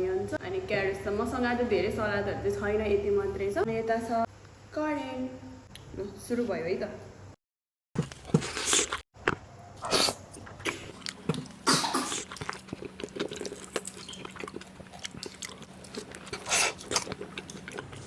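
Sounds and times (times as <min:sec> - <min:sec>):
chewing meat: 0:08.0 - 0:18.0
wet mouth clicks: 0:08.9 - 0:18.0.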